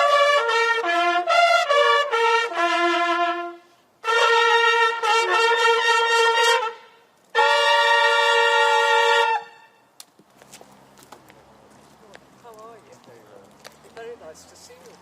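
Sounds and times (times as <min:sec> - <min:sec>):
bugle call: 0:00.0 - 0:09.8.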